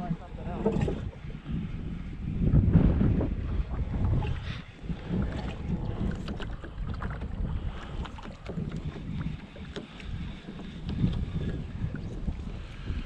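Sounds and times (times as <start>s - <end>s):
wind buffeting microphone: 0.0s - 13.0s.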